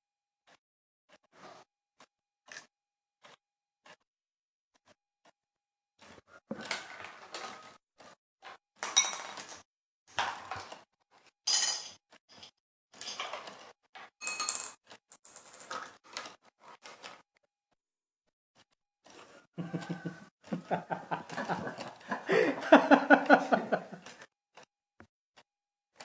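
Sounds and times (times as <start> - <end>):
hard objects clinking and rattling: 14.2 - 15.9.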